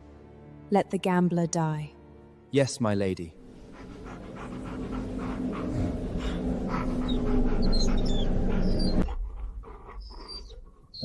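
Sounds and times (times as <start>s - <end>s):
dog panting: 3.5s - 11.0s
dog low vocal sound: 3.7s - 11.0s.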